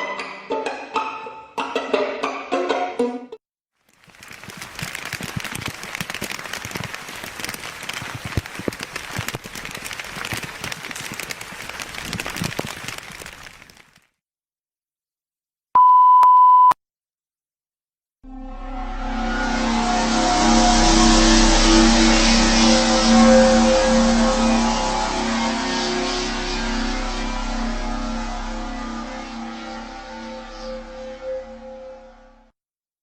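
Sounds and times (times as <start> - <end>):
crackling with small clicks: 3.8 - 14.0.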